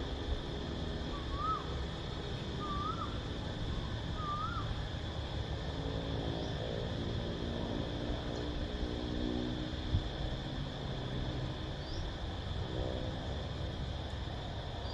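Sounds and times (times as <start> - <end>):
cicadas droning: 0.0 - 14.9
low wind rumble: 0.0 - 14.9
bird whistled calls: 1.1 - 1.7, 2.6 - 3.2, 4.2 - 4.7.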